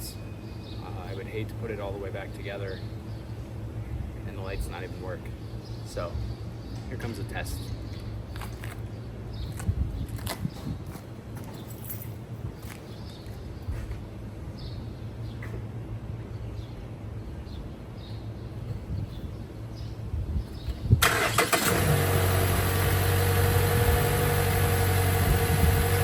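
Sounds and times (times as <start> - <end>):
car engine starting and idling: 21.0 - 26.0.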